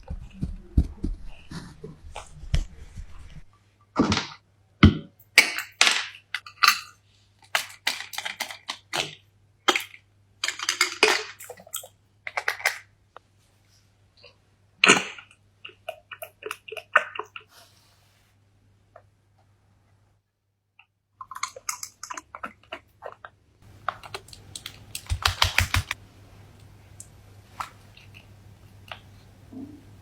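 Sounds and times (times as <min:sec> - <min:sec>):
scratchy rubbing: 0:00.0 - 0:03.5.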